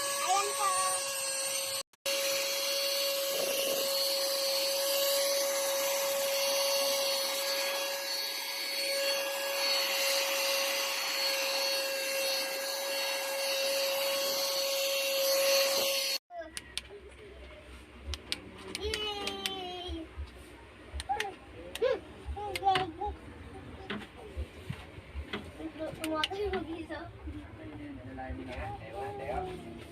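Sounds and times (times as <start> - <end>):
cordless vacuum cleaner running: 0.0 - 16.2.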